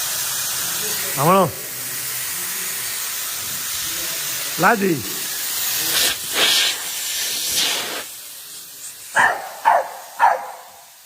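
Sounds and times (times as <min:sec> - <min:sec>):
loud steady hiss: 0:00.0 - 0:11.0
dog barking: 0:09.2 - 0:10.9.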